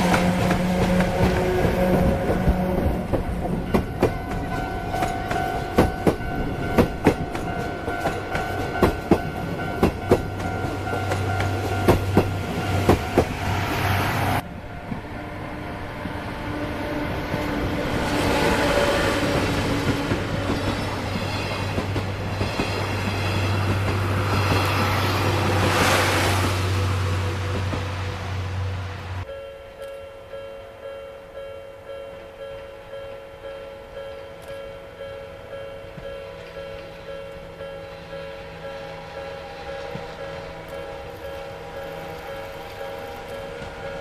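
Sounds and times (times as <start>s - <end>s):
train wheels clicking over rail joints: 0.0s - 13.7s, 17.3s - 26.7s
low hum of running train: 0.0s - 44.0s.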